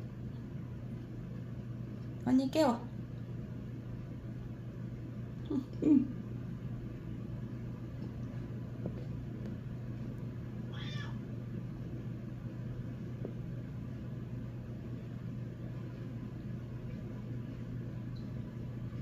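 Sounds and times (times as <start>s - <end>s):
steady low hum: 0.0s - 19.0s
cat meowing: 10.7s - 11.2s.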